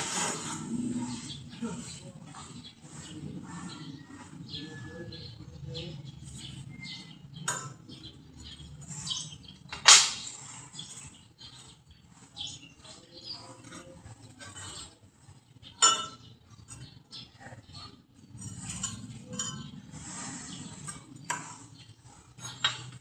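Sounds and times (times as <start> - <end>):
metal clangs: 15.8 - 16.3, 18.4 - 19.9, 22.4 - 23.0
metal parts knocking and scraping: 18.2 - 23.0.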